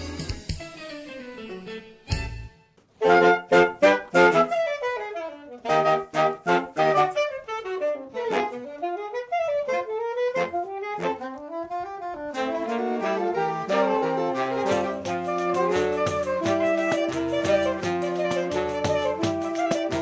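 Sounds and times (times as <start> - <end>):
saxophone quartet playing: 3.0 - 20.0.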